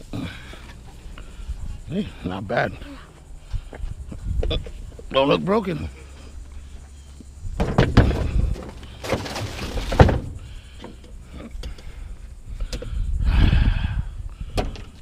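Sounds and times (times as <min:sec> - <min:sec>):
bench knocking and thudding: 0:07.6 - 0:08.8
bench rattling: 0:07.6 - 0:11.0
bench scraping: 0:07.6 - 0:11.0.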